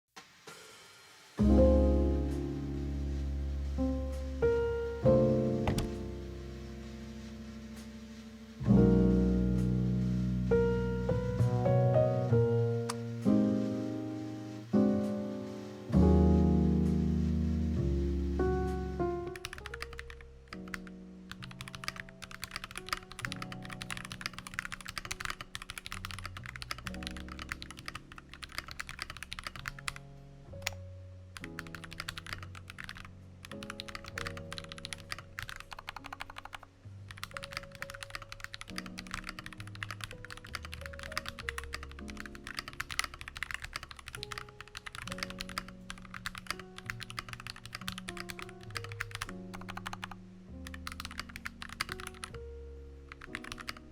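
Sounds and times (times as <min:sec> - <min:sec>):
background music: 0:01.4 - 0:53.9
fast typing on mechanical keyboard: 0:05.7 - 0:06.0, 0:19.2 - 0:30.0, 0:31.4 - 0:52.4, 0:53.1 - 0:53.9.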